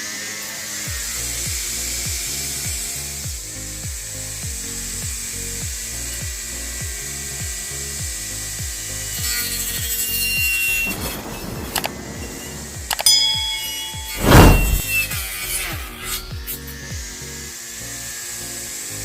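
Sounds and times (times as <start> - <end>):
electric grass cutter whining: 0.0 - 14.1, 14.9 - 19.0
background music with steady beat: 0.9 - 10.6.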